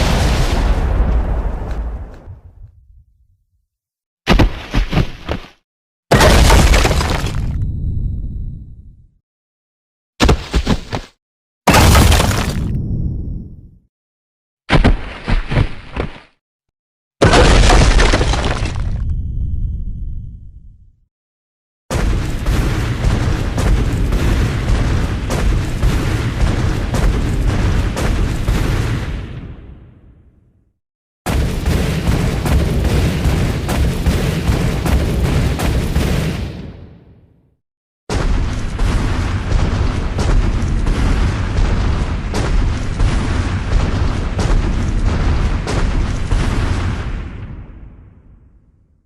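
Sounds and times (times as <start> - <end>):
heavy dinosaur footsteps: 14.7 - 16.4.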